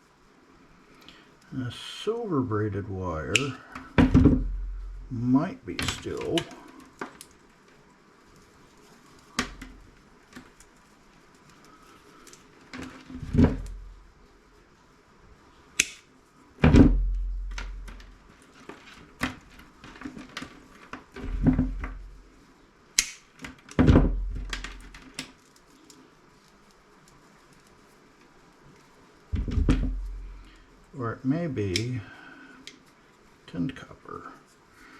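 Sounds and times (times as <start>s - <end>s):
heavy thuds of dropped pieces: 3.4s - 5.1s, 12.8s - 14.0s, 16.6s - 18.2s, 21.2s - 22.2s, 29.4s - 30.6s.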